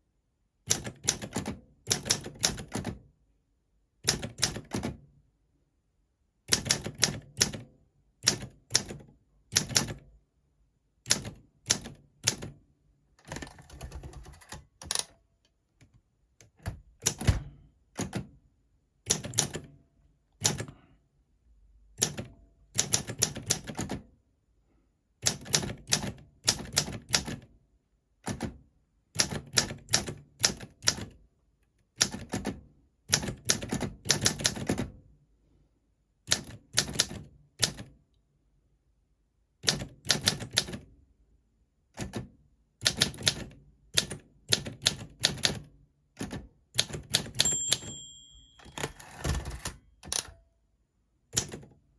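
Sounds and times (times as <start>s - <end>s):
manual typewriter keystrokes: 0.7s - 3.0s, 4.0s - 5.0s, 6.5s - 10.0s, 11.1s - 12.6s, 13.2s - 15.2s, 16.4s - 18.4s, 19.1s - 19.7s, 20.4s - 20.8s, 22.0s - 24.1s, 25.2s - 27.5s, 29.2s - 31.2s, 32.0s - 35.0s, 36.3s - 37.9s, 39.6s - 40.8s, 42.0s - 50.4s, 51.4s - 51.8s.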